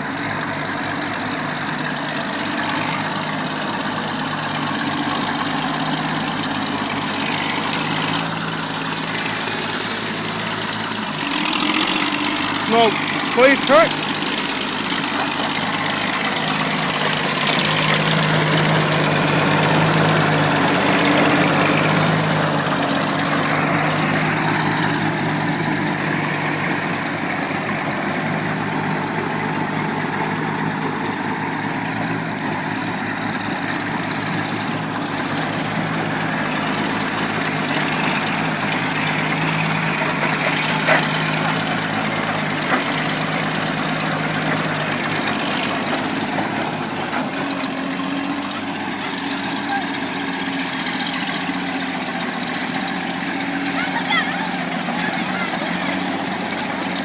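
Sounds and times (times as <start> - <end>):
bulldozer engine running: 0.0 - 57.0.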